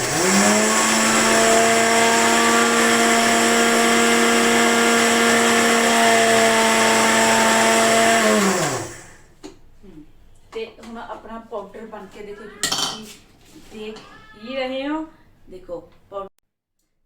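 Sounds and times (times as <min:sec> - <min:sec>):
mixer grinder motor running: 0:00.0 - 0:09.2.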